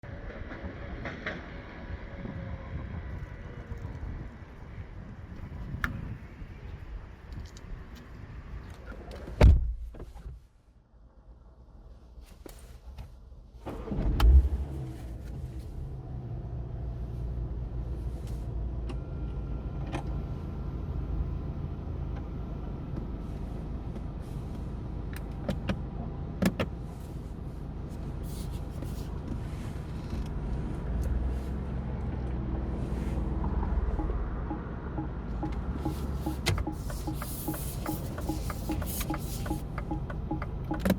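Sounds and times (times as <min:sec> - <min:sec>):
car engine starting and idling: 0:13.4 - 0:40.9.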